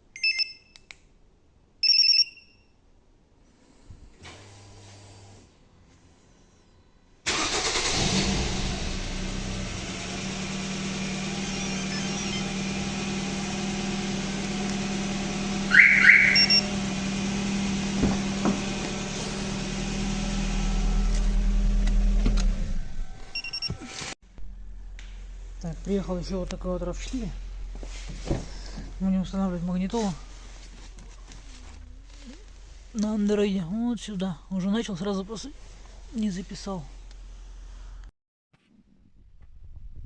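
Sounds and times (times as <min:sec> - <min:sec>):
high beeps: 0:01.8 - 0:02.6, 0:11.5 - 0:12.5, 0:15.7 - 0:16.7
car engine running: 0:07.8 - 0:33.3
short rising chirp: 0:15.7 - 0:16.7.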